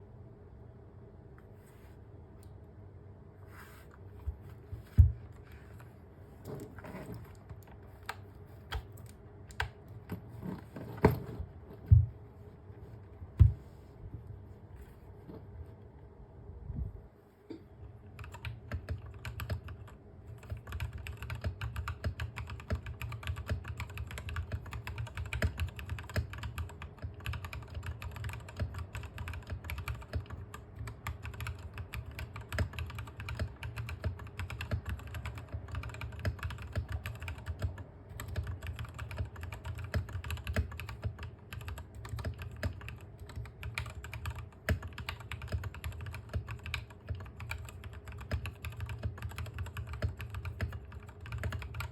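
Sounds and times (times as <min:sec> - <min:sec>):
mechanical keyboard typing: 0:07.3 - 0:10.2, 0:18.2 - 0:51.9.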